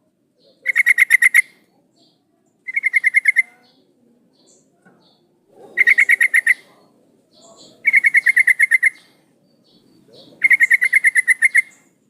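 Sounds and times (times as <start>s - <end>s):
bird rapid chattering call: 0.5s - 3.8s, 4.5s - 11.9s.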